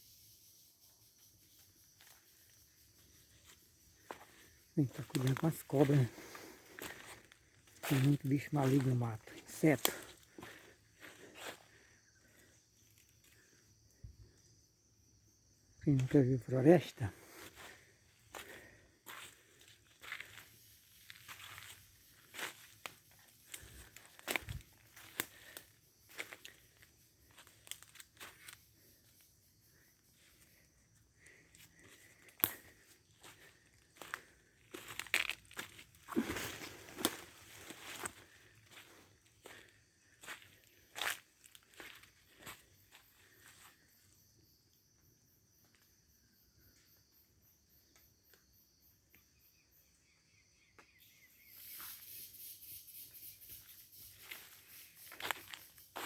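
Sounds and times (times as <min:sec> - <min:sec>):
insects chirping: 0:00.0 - 0:56.0
footsteps on leaves: 0:04.0 - 0:11.6, 0:21.1 - 0:26.6, 0:31.3 - 0:42.5, 0:54.2 - 0:56.0.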